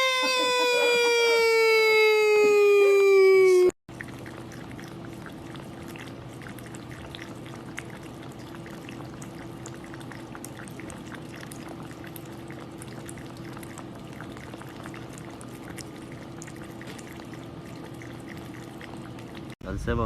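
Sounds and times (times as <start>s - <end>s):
loud falling tone: 0.0s - 3.7s.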